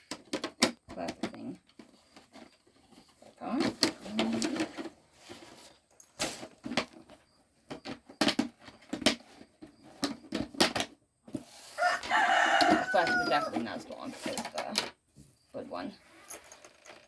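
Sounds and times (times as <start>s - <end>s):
handling rustle: 1.6s - 10.6s.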